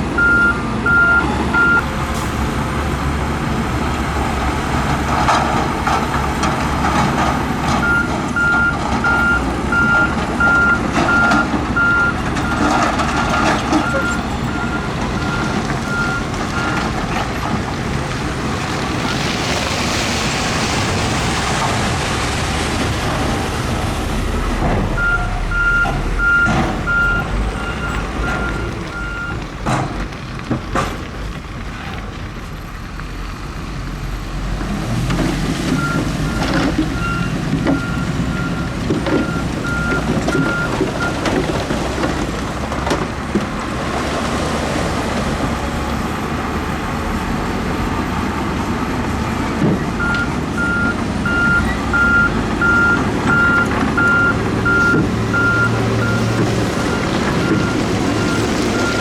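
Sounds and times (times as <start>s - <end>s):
diesel machinery running: 0.0s - 59.0s
reversing alarm beeping: 0.2s - 1.8s, 7.8s - 12.8s, 25.0s - 29.4s, 50.0s - 59.0s.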